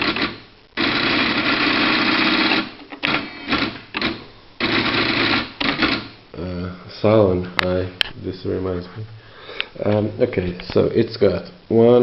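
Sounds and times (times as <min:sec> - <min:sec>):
typewriter mechanism buzzing: 0:00.0 - 0:06.2.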